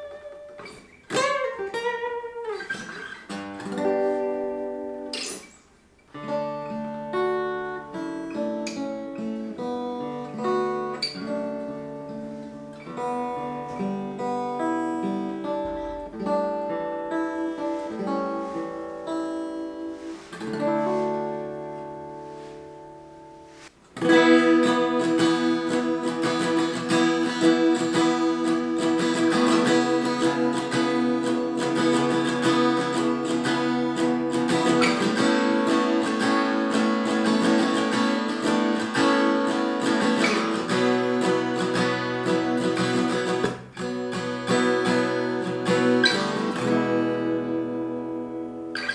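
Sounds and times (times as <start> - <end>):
acoustic guitar strumming: 0.0 - 48.9.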